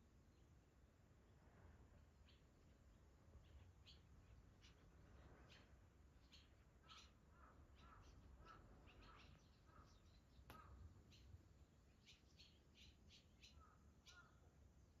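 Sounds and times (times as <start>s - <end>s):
swallows chirping: 3.4s - 14.4s.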